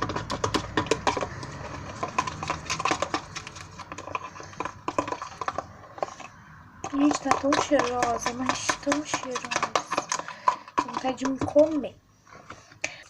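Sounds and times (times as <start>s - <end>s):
slime stirred in a bowl: 0.0s - 13.0s.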